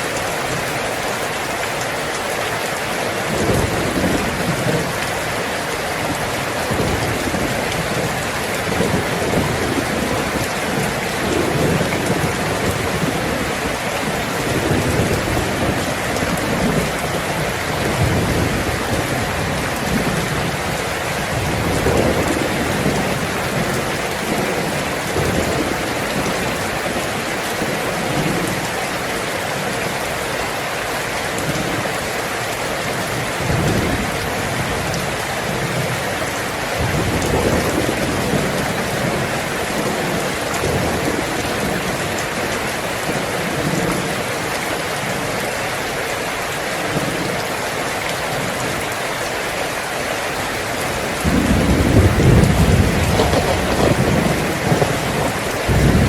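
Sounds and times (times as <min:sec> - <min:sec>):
heavy rain on a tin roof: 0:00.0 - 0:56.0
low rolls of thunder: 0:06.0 - 0:28.8, 0:32.9 - 0:36.0, 0:36.8 - 0:44.2, 0:51.2 - 0:56.0.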